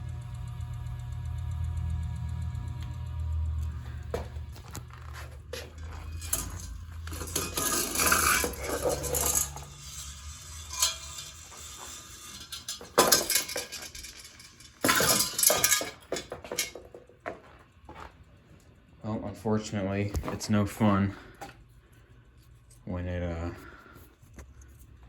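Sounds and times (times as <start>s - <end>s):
low motor hum: 0.0s - 16.2s
ceiling fan rattling and clanking: 0.0s - 22.5s.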